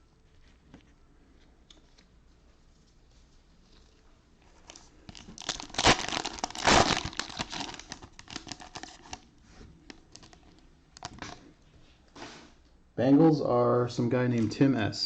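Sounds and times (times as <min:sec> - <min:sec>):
plastic wrapper crinkling: 0:03.7 - 0:11.5
plastic wrapper ripping: 0:04.6 - 0:09.3, 0:09.9 - 0:11.4.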